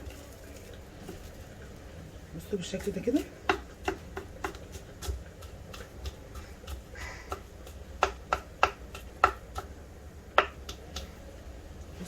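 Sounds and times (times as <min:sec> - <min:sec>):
knife chopping on board: 0:02.8 - 0:09.7, 0:10.4 - 0:11.1.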